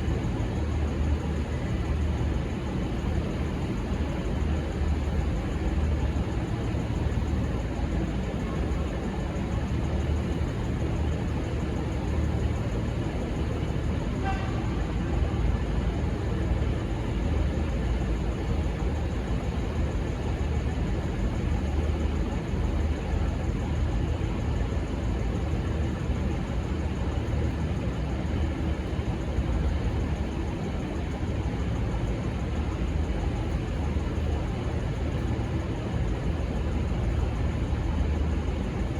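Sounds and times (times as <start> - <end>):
diesel train rumbling: 11.9 - 19.6.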